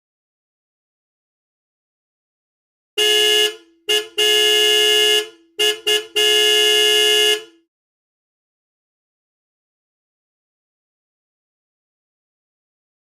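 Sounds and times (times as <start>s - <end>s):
car horn honking: 3.0s - 7.6s.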